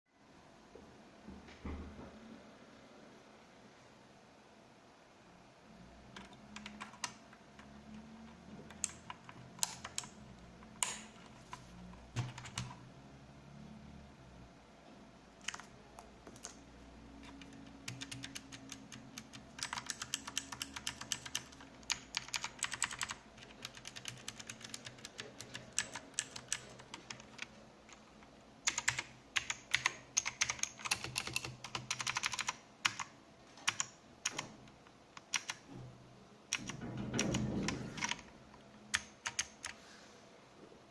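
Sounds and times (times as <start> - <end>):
mechanical keyboard typing: 6.1 - 12.8, 15.4 - 35.7, 36.5 - 38.3, 38.9 - 39.8.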